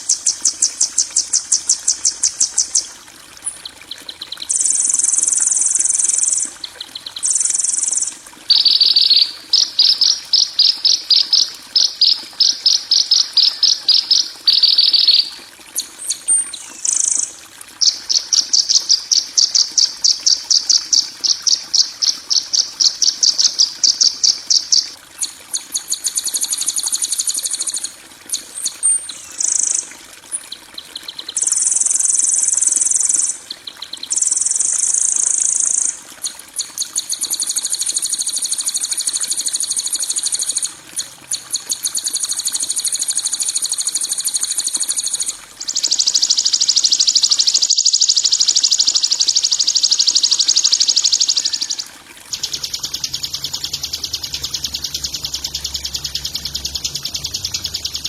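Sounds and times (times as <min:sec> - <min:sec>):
buzzing songbird trills: 0:44.5 - 0:58.0
low hum: 0:52.3 - 0:58.0.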